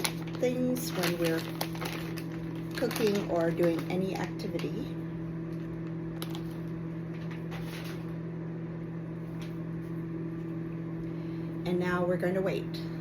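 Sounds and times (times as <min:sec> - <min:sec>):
microwave oven humming: 0:00.0 - 0:13.0.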